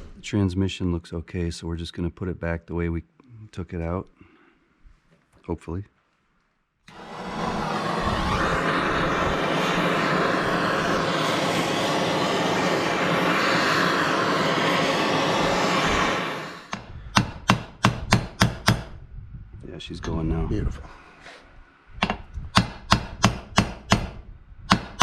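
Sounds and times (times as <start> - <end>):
heat gun running: 6.9 - 16.8.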